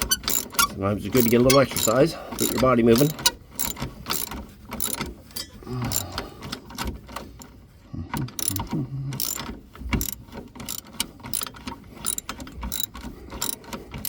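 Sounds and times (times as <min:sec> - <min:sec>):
ratchet wrench clicking: 0:00.0 - 0:05.1, 0:08.2 - 0:14.0.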